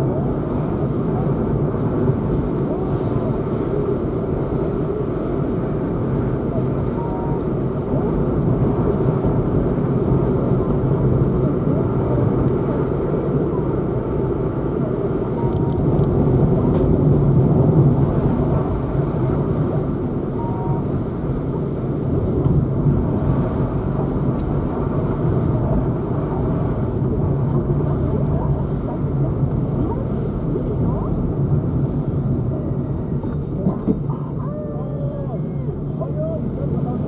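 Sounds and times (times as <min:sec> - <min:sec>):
car engine hum: 0:00.0 - 0:37.0
tyre and road noise: 0:00.0 - 0:37.0.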